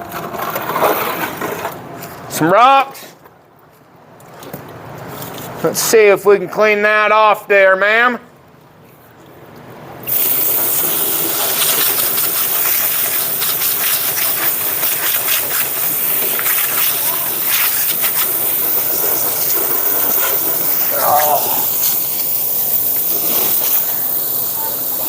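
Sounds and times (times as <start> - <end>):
hose water spraying: 10.0 - 25.0.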